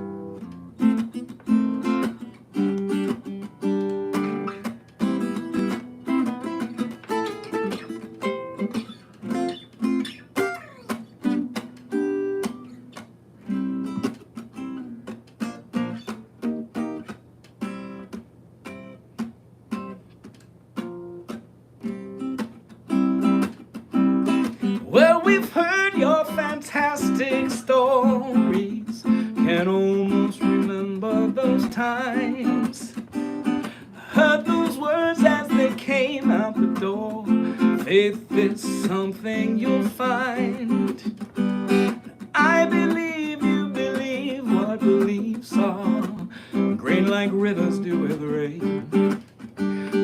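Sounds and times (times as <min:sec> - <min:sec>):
acoustic guitar strumming chords: 0:00.0 - 0:50.0
man singing: 0:24.6 - 0:41.2, 0:42.0 - 0:49.2.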